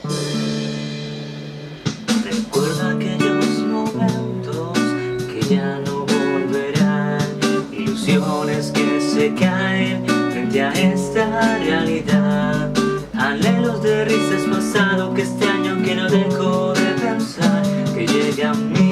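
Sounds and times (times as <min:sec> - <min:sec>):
strummed acoustic guitar: 0:00.0 - 0:18.9.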